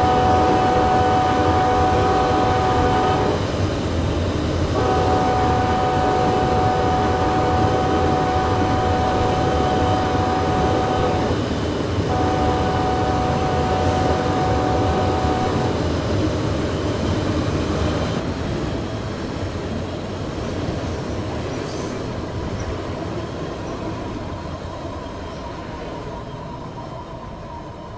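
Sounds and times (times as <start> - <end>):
locomotive air horn chord: 0.0 - 3.9, 4.7 - 18.2
passing train rumble: 0.0 - 27.9.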